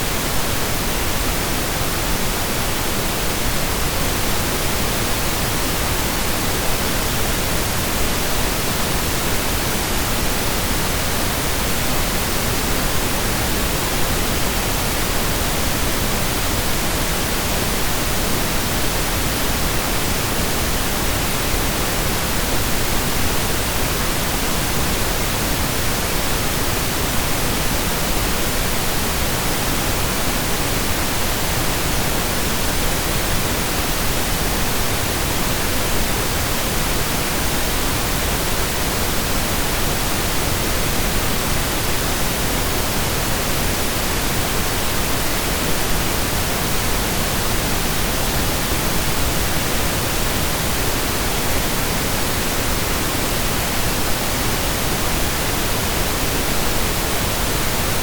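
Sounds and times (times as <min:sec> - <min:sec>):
pink noise hiss: 0:00.0 - 0:58.0.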